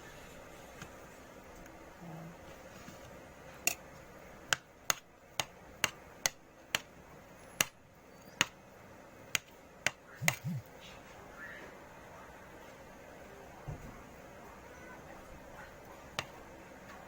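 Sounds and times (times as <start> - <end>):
eating clicks: 10.2 - 10.7
low hum: 10.2 - 10.8.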